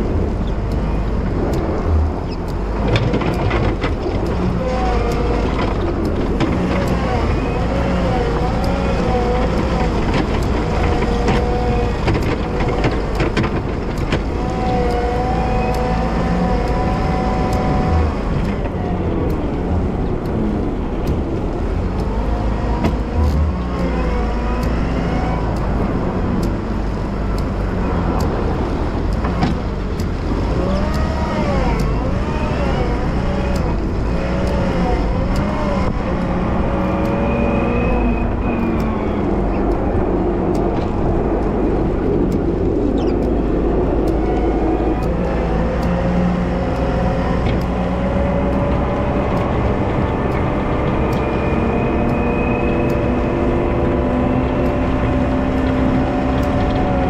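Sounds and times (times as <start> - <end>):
engine whine: 0.0 - 57.0
loader engine rumble: 0.0 - 57.0
sharp clicks and knocks: 0.0 - 57.0.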